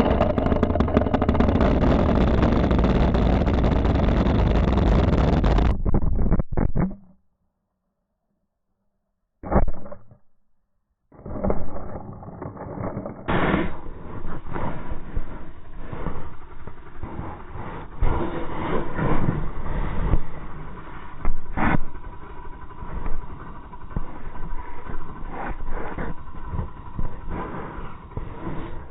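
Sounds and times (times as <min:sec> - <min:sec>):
chainsaw engine running: 0:00.0 - 0:04.4, 0:13.8 - 0:28.9.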